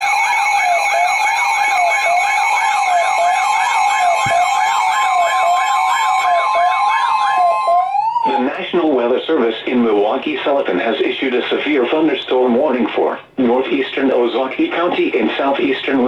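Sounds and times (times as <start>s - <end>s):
electronic siren tones: 0.0s - 8.6s.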